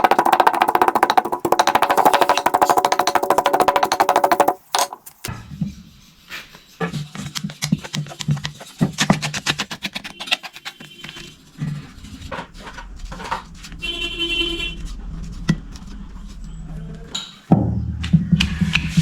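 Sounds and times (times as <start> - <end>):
rapid sharp clicks: 0.0 - 5.3
brief horn-like tone: 13.8 - 15.0.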